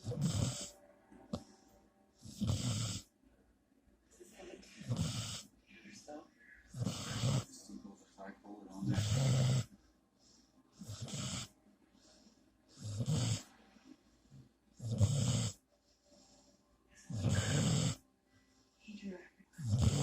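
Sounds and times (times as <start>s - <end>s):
loud snoring: 0.0s - 0.8s, 2.2s - 3.1s, 4.8s - 5.5s, 6.7s - 7.5s, 8.8s - 9.7s, 10.8s - 11.5s, 12.8s - 13.5s, 14.8s - 15.6s, 17.1s - 18.0s, 19.6s - 20.0s.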